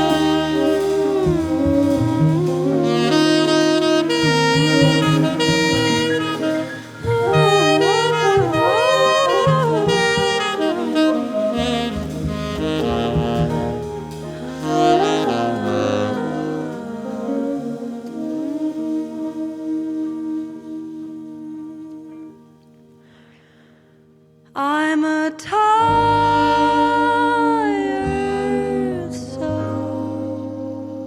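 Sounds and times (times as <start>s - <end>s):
low band accompaniment: 0.0s - 22.4s
saxophone jazz ballad melody: 0.0s - 23.3s, 25.8s - 31.0s.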